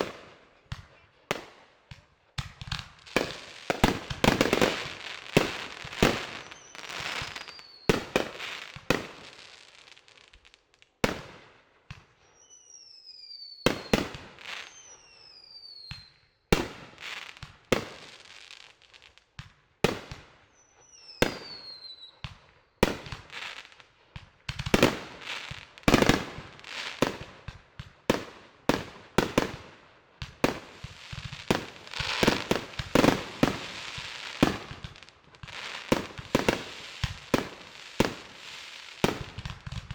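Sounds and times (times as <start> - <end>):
fireworks banging: 2.4 - 9.3, 30.3 - 39.9
falling firework whistles: 3.2 - 9.6, 12.2 - 16.4, 20.4 - 22.3, 30.6 - 39.9.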